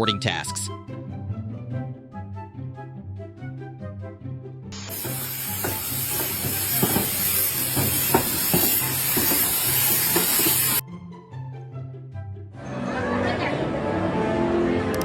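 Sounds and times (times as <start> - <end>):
light background music: 0.0 - 9.1, 10.3 - 15.0
loud steady hissing: 4.8 - 10.8.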